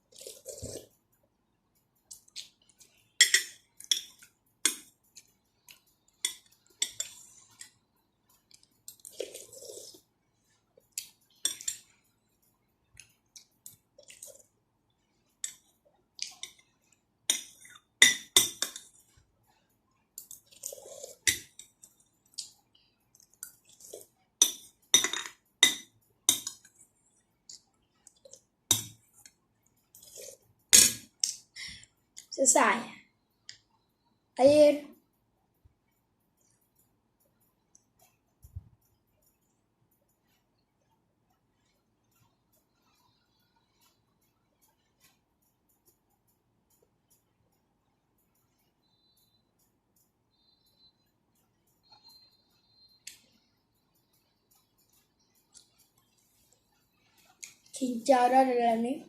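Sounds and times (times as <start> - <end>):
eating sounds: 0.0 - 1.0
cutlery clinking against bowl: 3.2 - 5.3, 6.2 - 7.8, 11.0 - 11.9, 15.4 - 16.6, 17.3 - 19.1, 20.2 - 26.8, 28.0 - 29.3, 29.9 - 31.4.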